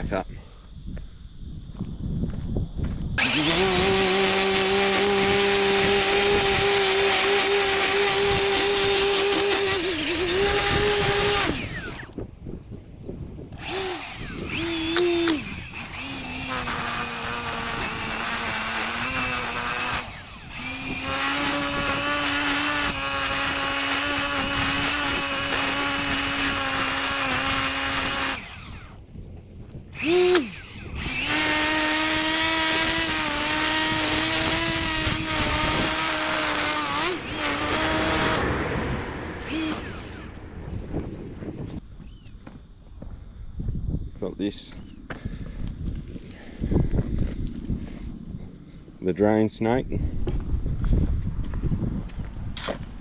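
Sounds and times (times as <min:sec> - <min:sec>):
string trimmer running: 0:03.2 - 0:41.8.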